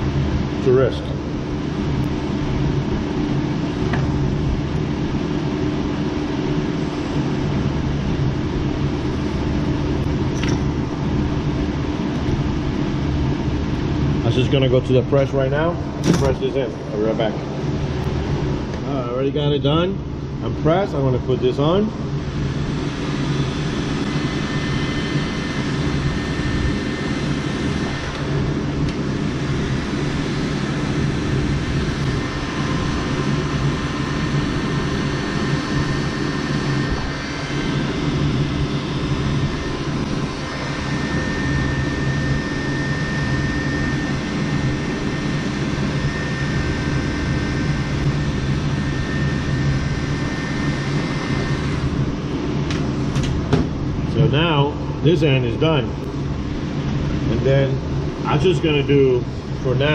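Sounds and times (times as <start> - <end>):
motor whirring and humming: 22.2 - 53.5.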